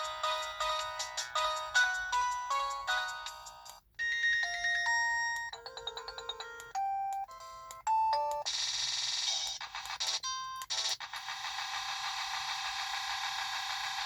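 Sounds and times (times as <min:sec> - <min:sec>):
phone ringtone melody: 0:00.0 - 0:08.5.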